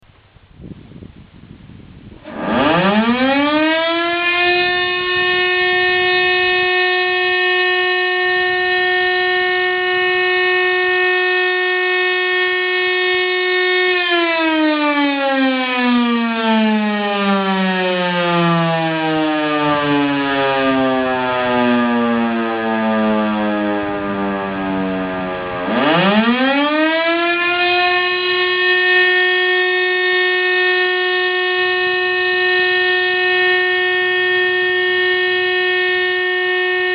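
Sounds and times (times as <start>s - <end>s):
motor-driven fire siren wailing: 2.2s - 36.9s.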